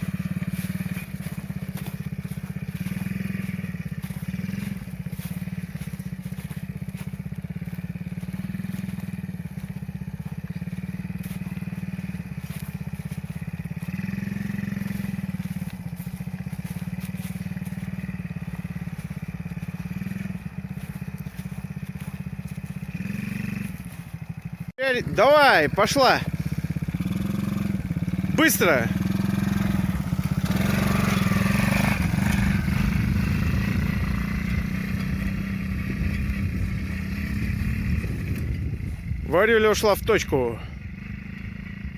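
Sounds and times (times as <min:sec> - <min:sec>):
small atv engine revving: 0:00.0 - 0:41.9.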